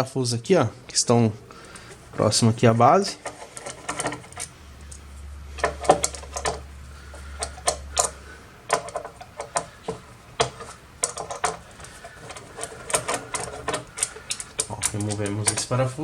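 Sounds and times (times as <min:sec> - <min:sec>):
screwdriver clicking on a screw: 0:07.4 - 0:15.7.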